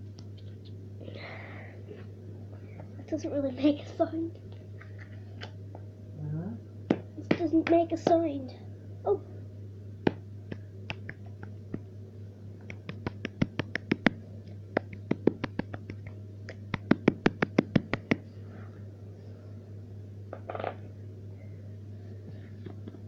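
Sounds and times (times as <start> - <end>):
steady low hum: 0.0 - 23.0
sharp taps or clicks: 12.6 - 14.2, 14.8 - 18.2.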